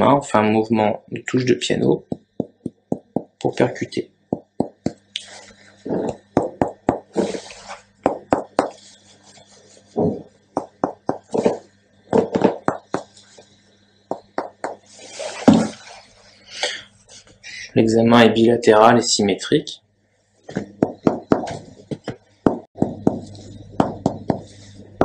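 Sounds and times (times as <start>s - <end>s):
finger tapping on chest: 2.1s - 3.5s, 4.3s - 5.0s, 6.0s - 7.1s, 8.0s - 8.8s, 10.6s - 11.4s, 12.4s - 13.1s, 14.1s - 14.8s.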